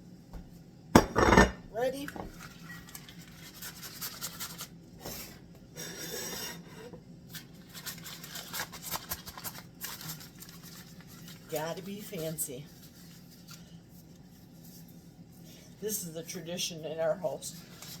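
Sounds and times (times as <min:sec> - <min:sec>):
plate knock on counter: 0:01.0 - 0:01.6.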